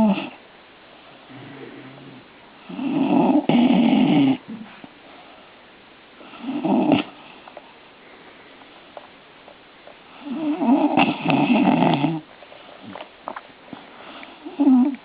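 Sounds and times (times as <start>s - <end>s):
dog snoring breaths: 0.0s - 0.4s, 1.2s - 5.4s, 6.2s - 7.5s, 10.1s - 12.2s, 13.8s - 15.0s.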